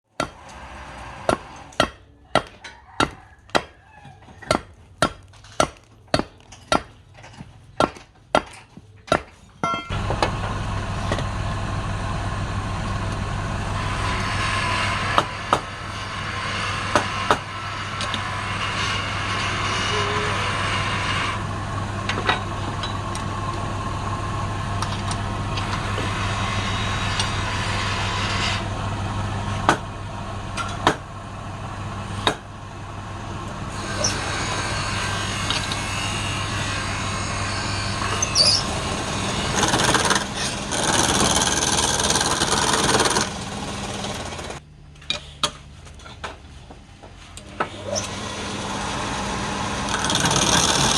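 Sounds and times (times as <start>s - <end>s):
tool scraping spinning wood: 0.1s - 1.8s, 12.8s - 44.6s, 47.2s - 50.9s
wood lathe motor humming: 9.9s - 44.6s, 47.8s - 50.9s.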